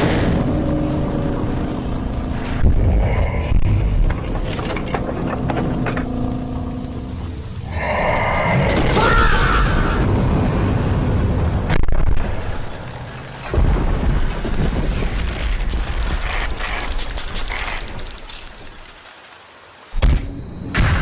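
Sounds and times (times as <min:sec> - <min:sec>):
explosion booms and rumbling: 0:00.0 - 0:18.6, 0:20.0 - 0:21.0.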